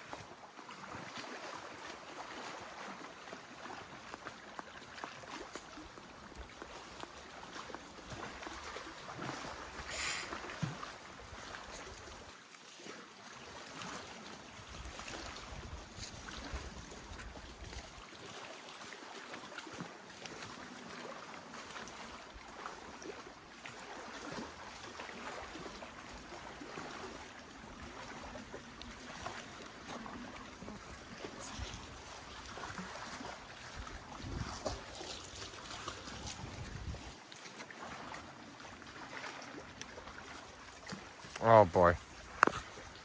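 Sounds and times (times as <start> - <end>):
water lapping at shore: 0.0 - 43.0
small rustles and ticks: 3.3 - 43.0
wind rumble on microphone: 14.5 - 18.0, 30.6 - 37.2.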